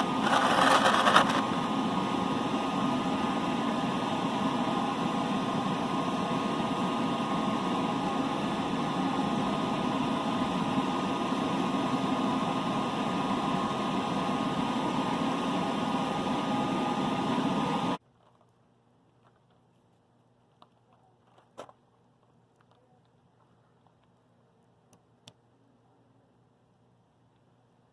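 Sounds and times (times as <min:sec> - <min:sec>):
machine humming: 0:00.0 - 0:18.0.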